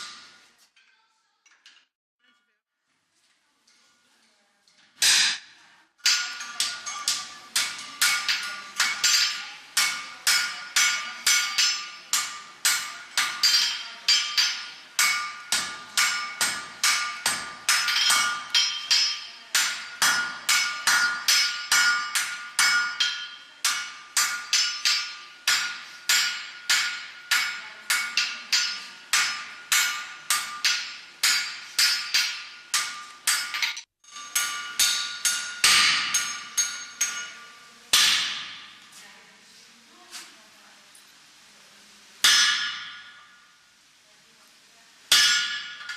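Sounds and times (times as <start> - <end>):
anvil ringing: 6.0 - 38.8, 42.2 - 43.4, 45.1 - 45.9
hammer blows on anvil: 6.0 - 38.8.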